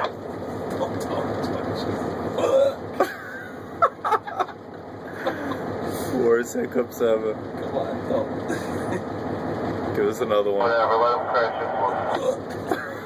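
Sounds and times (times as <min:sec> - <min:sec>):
man hiccupping: 0:02.4 - 0:02.9.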